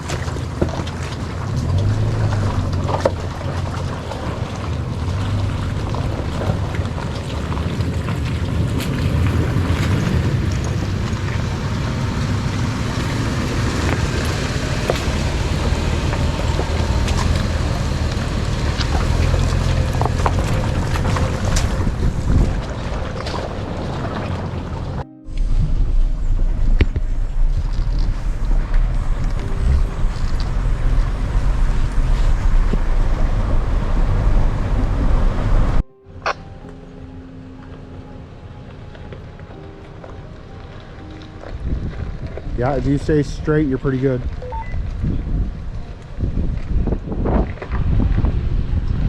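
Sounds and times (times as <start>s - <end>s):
wind buffeting microphone: 0.0s - 35.8s, 38.3s - 49.0s
vehicle engine running low: 0.0s - 35.9s, 38.8s - 49.0s.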